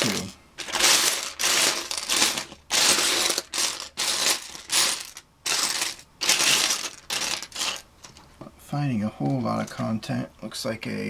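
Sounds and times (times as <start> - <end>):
plastic bricks clattering: 0.0 - 8.3.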